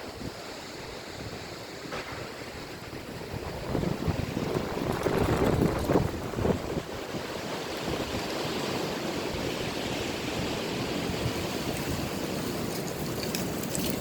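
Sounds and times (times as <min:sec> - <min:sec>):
wind blowing: 0:00.0 - 0:14.0
faint ticks: 0:12.6 - 0:14.0.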